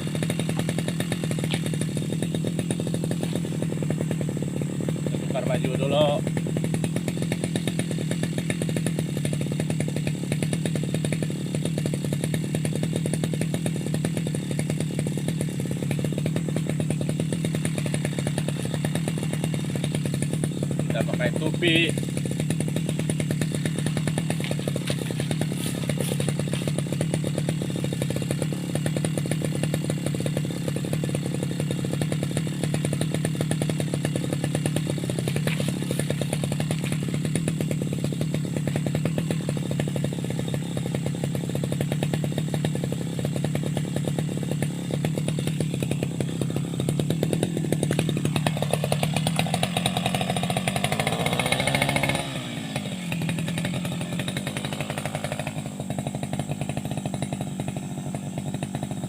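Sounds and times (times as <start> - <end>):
brush cutter engine running: 0.0 - 59.0.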